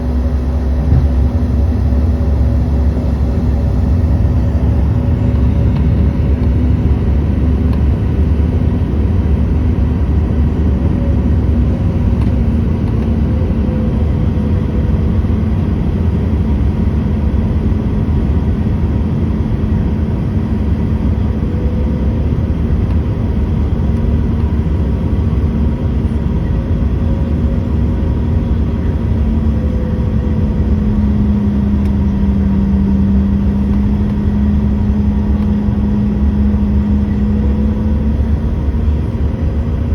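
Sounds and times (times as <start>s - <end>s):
steady cabin hum: 0.0s - 16.8s
jet engine cabin rumble: 0.0s - 39.9s.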